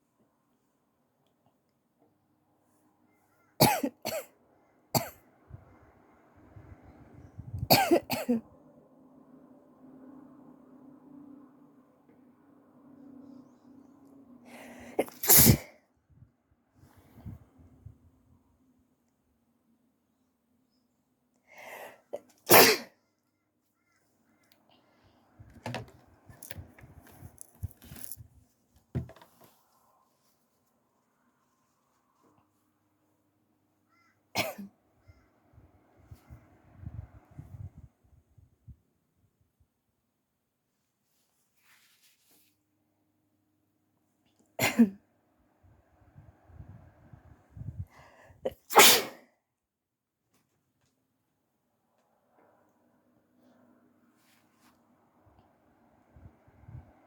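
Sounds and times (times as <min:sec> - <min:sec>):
person coughing: 0:03.6 - 0:04.3, 0:07.7 - 0:08.4, 0:15.0 - 0:15.6, 0:34.4 - 0:34.7, 0:44.6 - 0:45.0
person sneezing: 0:14.8 - 0:15.8, 0:22.5 - 0:22.9, 0:48.5 - 0:49.2
soft rustles and clicks: 0:25.4 - 0:31.1.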